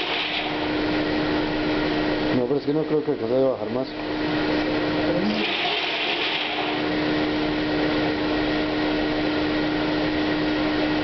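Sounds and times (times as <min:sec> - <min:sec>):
blower airy rush: 0:00.0 - 0:11.0
strong steady hum: 0:00.0 - 0:11.0.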